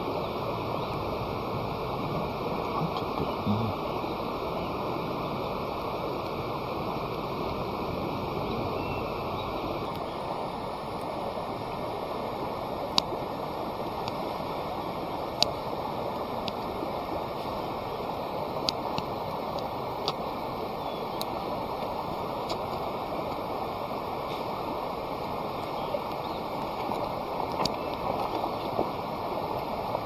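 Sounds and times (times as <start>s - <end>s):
campfire crackling: 9.7s - 30.0s.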